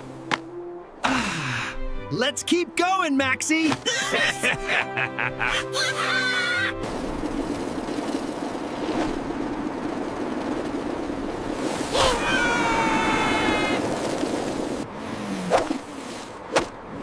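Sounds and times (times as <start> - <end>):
snowboards sliding over snow: 6.0 - 16.5.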